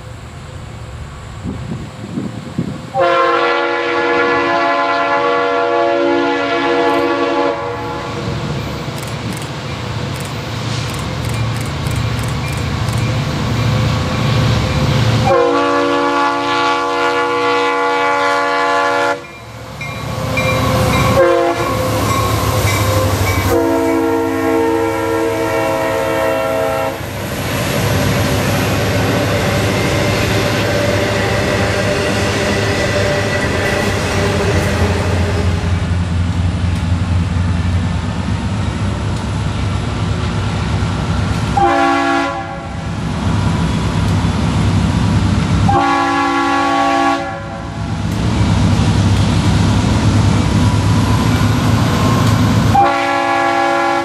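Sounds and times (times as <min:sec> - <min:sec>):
locomotive horn blasts: 0:02.9 - 0:08.4, 0:15.2 - 0:19.3, 0:20.1 - 0:27.0, 0:41.6 - 0:42.8, 0:45.7 - 0:47.7, 0:52.7 - 0:54.0.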